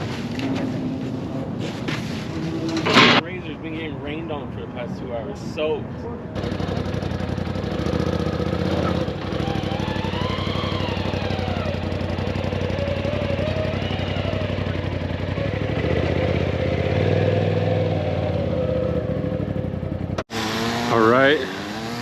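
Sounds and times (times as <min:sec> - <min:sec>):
engine idling: 0:06.4 - 0:16.4.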